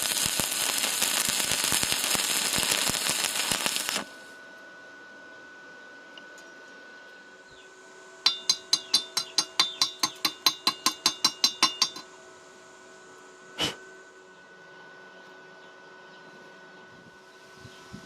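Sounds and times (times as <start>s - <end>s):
faint steady hum: 0.0s - 18.0s
ringing metallic taps on steel: 8.2s - 12.1s.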